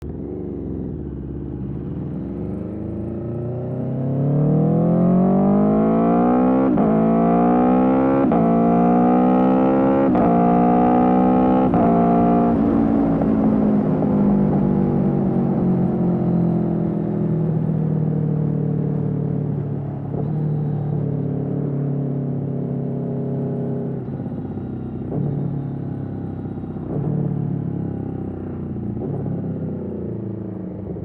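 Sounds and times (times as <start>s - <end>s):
motorcycle engine accelerating: 0.0s - 31.0s.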